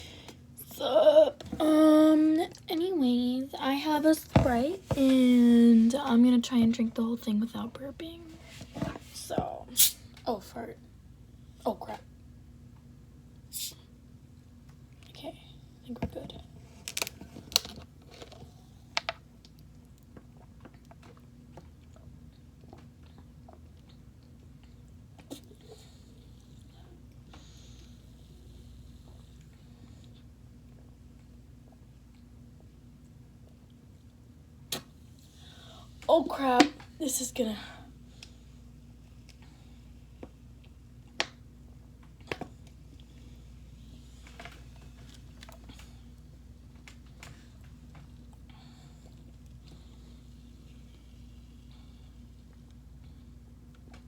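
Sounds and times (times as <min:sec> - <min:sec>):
steady low hum: 0:00.0 - 0:54.0
person swallowing and gulping: 0:20.1 - 0:24.4.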